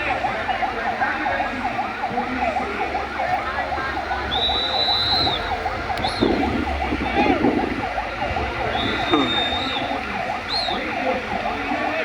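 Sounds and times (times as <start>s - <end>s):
emergency sirens yelping: 0.0s - 12.0s
high whistle-like tone: 4.3s - 11.1s.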